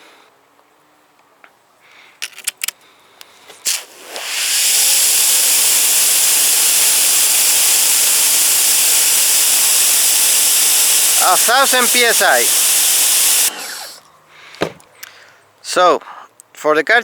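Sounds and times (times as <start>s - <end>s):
pressure washer water jet hissing: 3.6s - 14.0s.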